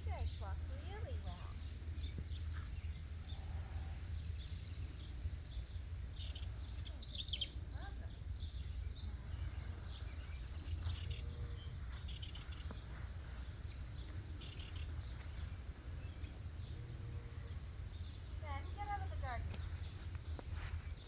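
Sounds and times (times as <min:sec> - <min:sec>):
birds chirping: 0:00.0 - 0:21.0
wind rumble on microphone: 0:00.0 - 0:21.0.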